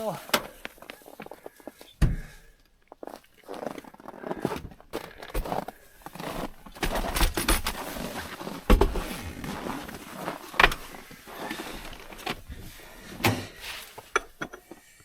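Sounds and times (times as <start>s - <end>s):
rustling of handled objects: 2.7s - 15.0s
objects knocking and clunking: 4.5s - 15.0s.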